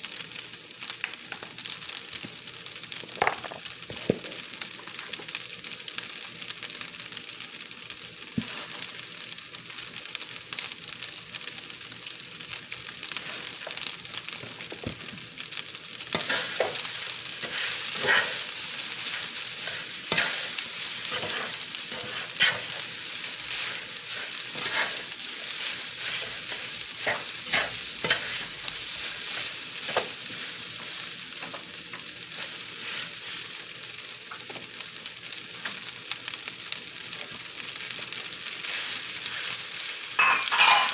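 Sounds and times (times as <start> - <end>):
food sizzling in a pan: 0.0 - 40.9
utensil scraping and clinking on pan: 40.2 - 40.9.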